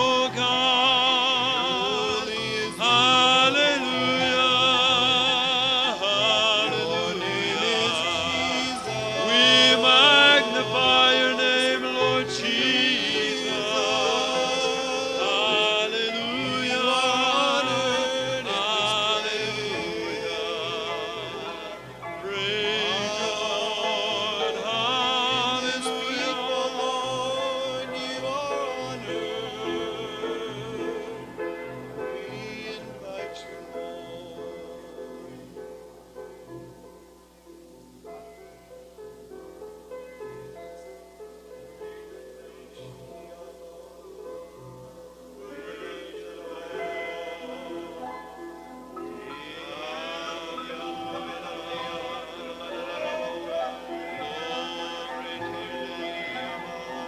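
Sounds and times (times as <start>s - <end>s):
congregation singing: 0.0s - 35.8s, 41.8s - 57.0s.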